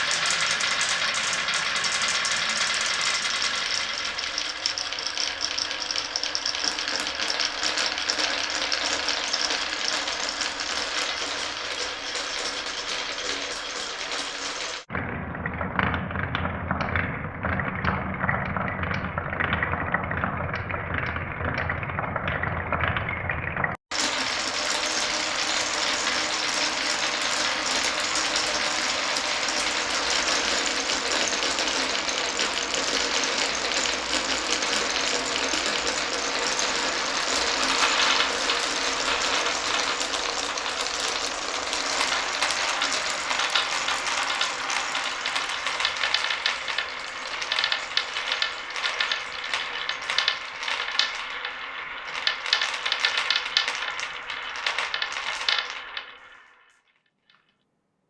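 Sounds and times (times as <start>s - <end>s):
marbles rolling on marble run: 0.0s - 14.9s, 23.9s - 56.8s.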